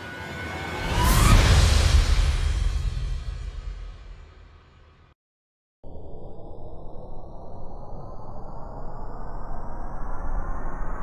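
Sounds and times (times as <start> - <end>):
synthesized riser rumble: 5.8 - 11.0.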